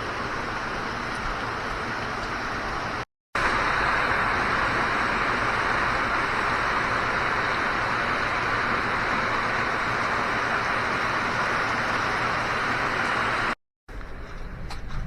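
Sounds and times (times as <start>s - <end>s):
heavy rain: 0.0s - 13.6s.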